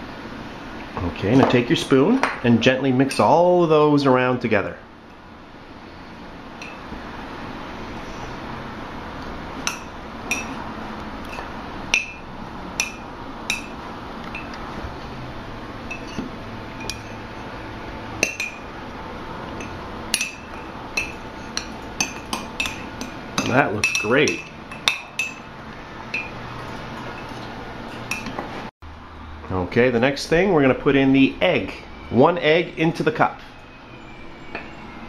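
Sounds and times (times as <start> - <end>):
spoon clinking against mug: 9.6 - 10.6, 18.2 - 18.6, 19.6 - 25.5, 26.1 - 26.4
spoon stirring dry powder: 19.6 - 25.4.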